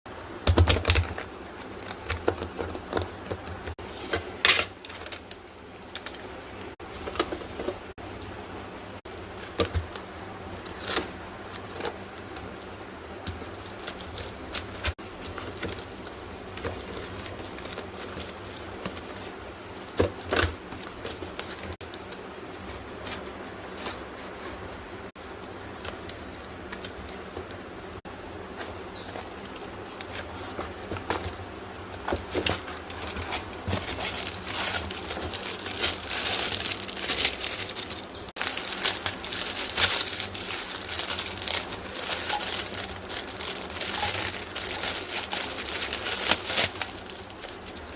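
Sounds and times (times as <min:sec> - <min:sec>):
packaging rustling: 0:13.3 - 0:27.6, 0:28.5 - 0:47.9.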